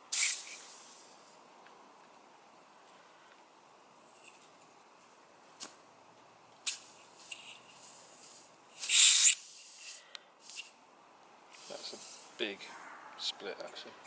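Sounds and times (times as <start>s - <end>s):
air hissing from tyre puncture: 0.1s - 1.4s, 6.6s - 10.8s, 11.5s - 12.9s.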